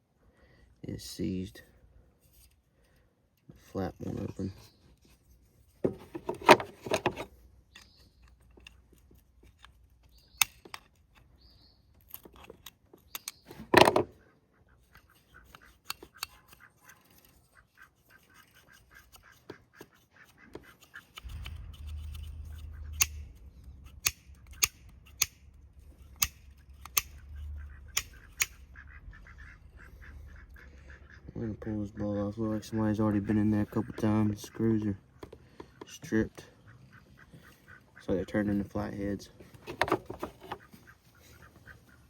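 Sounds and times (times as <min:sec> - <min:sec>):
hand tool clicks and knocks: 0:20.6 - 0:23.2
low rumble: 0:21.2 - 0:30.8.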